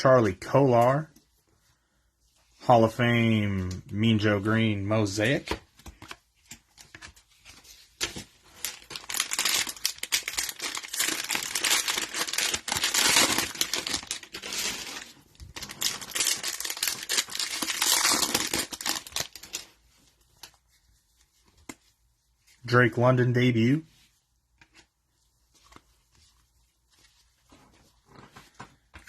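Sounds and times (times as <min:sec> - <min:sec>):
cellophane wrapper crinkling and tearing: 0:08.0 - 0:19.8.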